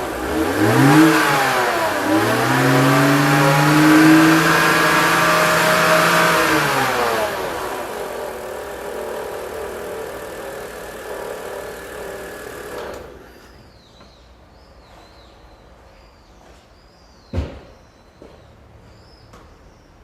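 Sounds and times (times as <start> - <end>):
car engine revving down to idle: 0.0 - 13.5
engine belt and pulleys whirring: 0.0 - 13.8.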